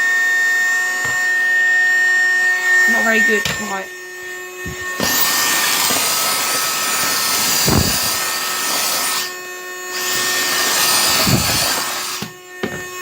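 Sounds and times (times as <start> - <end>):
vacuum tool bumping floor: 4.6 - 9.4, 10.0 - 13.0
vacuum cleaner sucking grit: 4.9 - 12.4.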